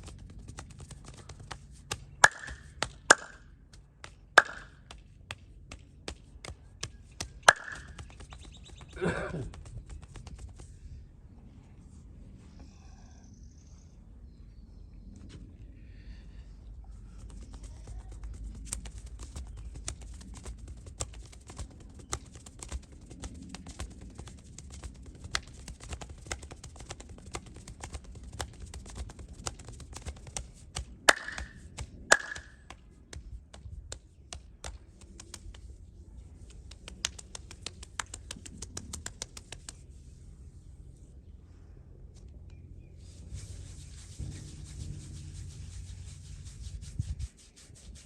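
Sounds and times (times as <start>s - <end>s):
hands tapping on body: 0.0s - 10.7s, 17.2s - 35.8s, 36.5s - 39.9s.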